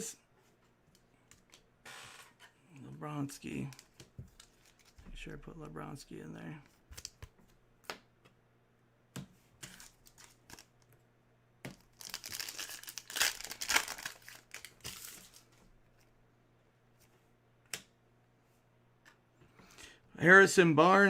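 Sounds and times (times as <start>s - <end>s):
plastic wrapper crinkling: 9.6s - 10.8s, 11.8s - 15.5s.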